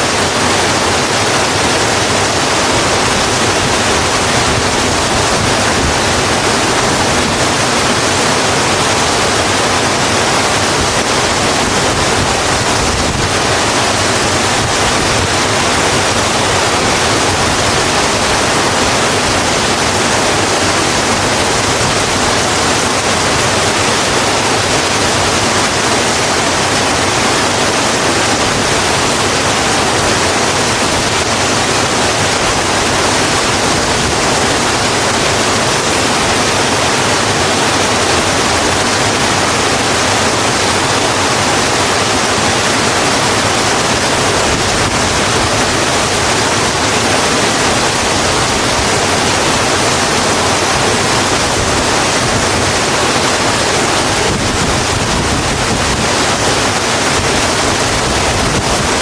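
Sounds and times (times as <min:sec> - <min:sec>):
rain falling on a road: 0:00.0 - 0:59.0.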